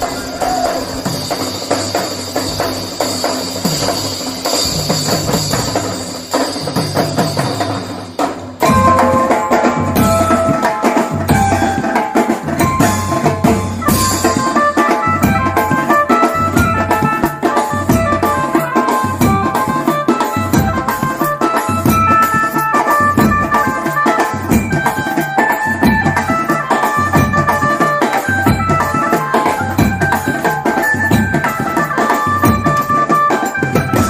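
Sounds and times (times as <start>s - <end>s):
held melody over drums: 0.0s - 34.0s
music with drum beat: 0.0s - 34.0s.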